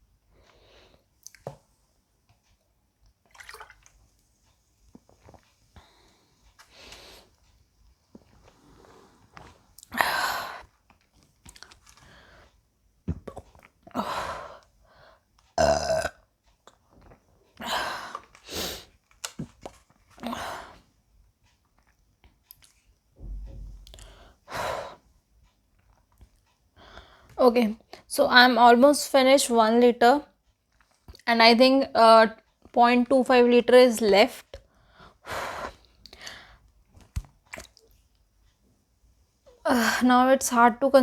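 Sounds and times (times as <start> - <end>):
woman burping: 15.6 - 16.3.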